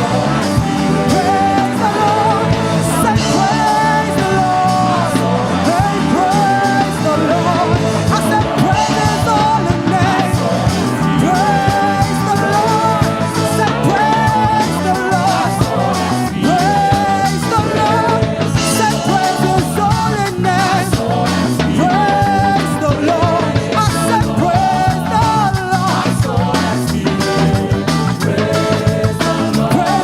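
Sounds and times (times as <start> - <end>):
live gospel band playing: 0.0 - 30.0.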